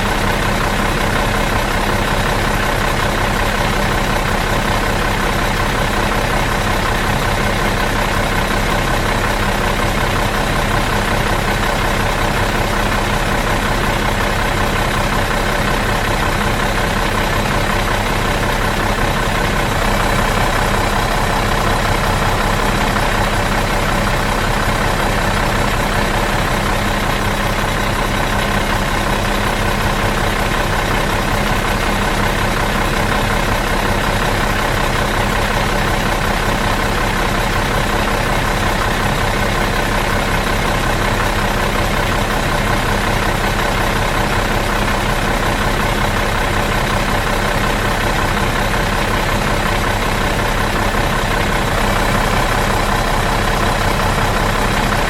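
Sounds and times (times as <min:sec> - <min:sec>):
bus engine idling: 0:00.0 - 0:55.0.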